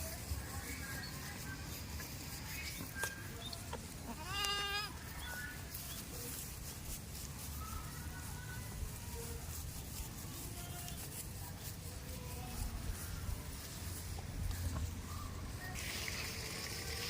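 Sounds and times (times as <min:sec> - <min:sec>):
goat bleating: 0:03.8 - 0:05.0.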